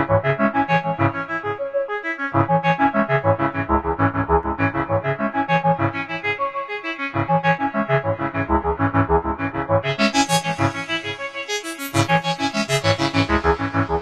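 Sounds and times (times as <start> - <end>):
synthesizer plucked sequence: 2.4 - 6.6, 7.2 - 14.0
low synthesizer bass line: 3.1 - 6.0, 7.9 - 10.8, 12.9 - 14.0.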